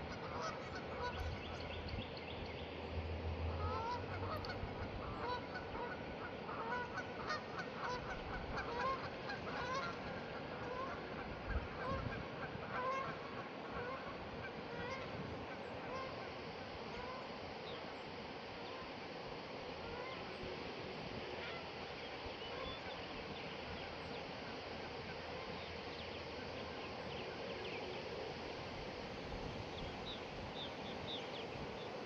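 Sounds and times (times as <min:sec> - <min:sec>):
geese honking: 0:00.0 - 0:01.6, 0:03.5 - 0:17.4, 0:19.8 - 0:20.6, 0:21.3 - 0:21.7.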